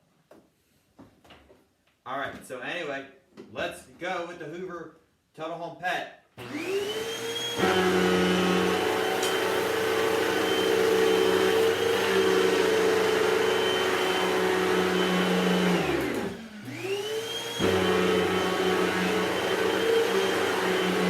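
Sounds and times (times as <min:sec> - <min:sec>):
vacuum cleaner motor hum: 0:06.4 - 0:21.0.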